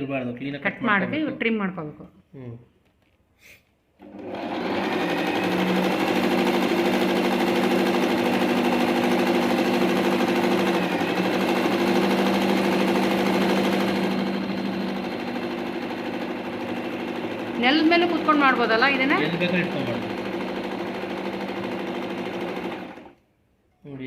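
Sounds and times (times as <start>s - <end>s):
sewing machine running: 4.0s - 23.2s.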